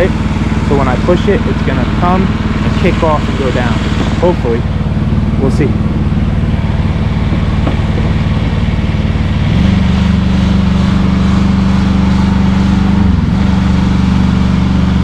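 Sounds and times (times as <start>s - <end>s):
chainsaw engine running: 0.0s - 15.0s.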